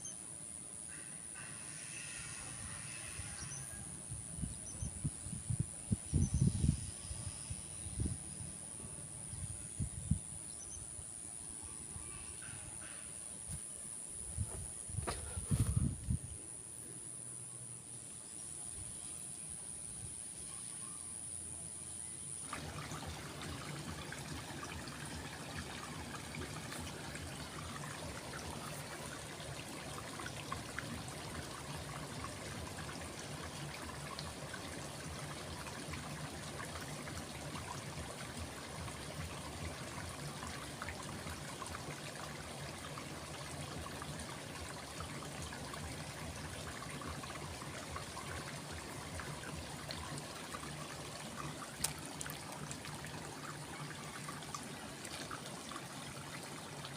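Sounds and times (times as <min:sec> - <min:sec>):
stream water trickling: 0:00.0 - 0:08.7, 0:21.8 - 0:56.9.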